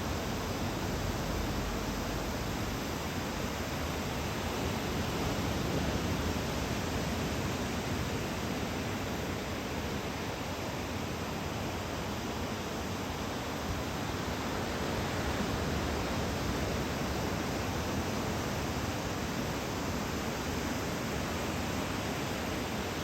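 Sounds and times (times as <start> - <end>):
surf roaring on beach: 0.0 - 23.0.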